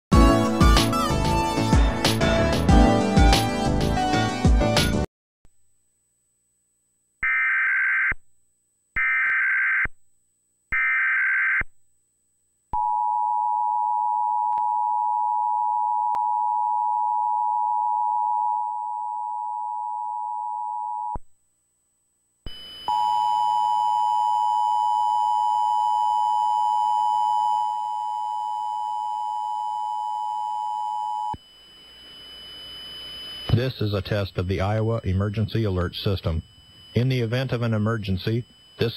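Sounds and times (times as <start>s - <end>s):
faint high whine: 16.1s - 38.9s.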